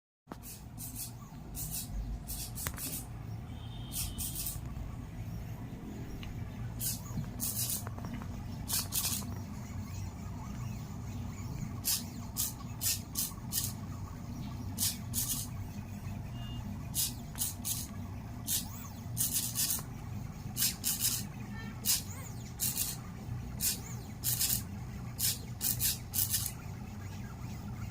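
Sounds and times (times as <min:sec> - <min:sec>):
stepper motors humming: 0:00.3 - 0:27.9
high-pitched motor bursts: 0:00.4 - 0:27.9.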